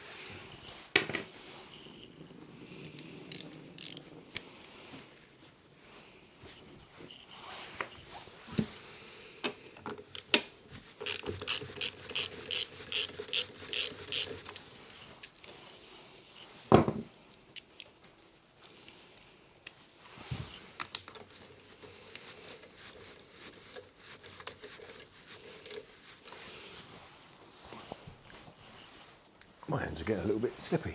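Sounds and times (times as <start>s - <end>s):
metal parts clicking and knocking: 2.8s - 4.0s, 9.8s - 15.6s
socket ratchet clicking: 2.9s - 4.0s, 11.0s - 14.6s.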